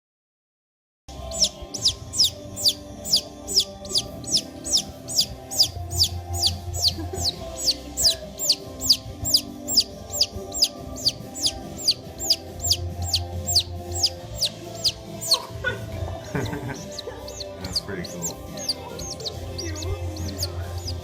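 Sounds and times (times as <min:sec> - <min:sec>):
background music: 0:01.1 - 0:21.0
high sliding chirps: 0:01.3 - 0:15.5.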